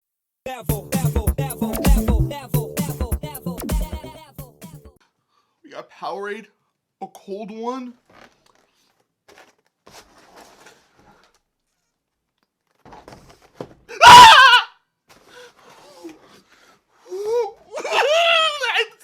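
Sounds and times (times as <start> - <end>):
man's short wavering cry: 13.9 - 14.7.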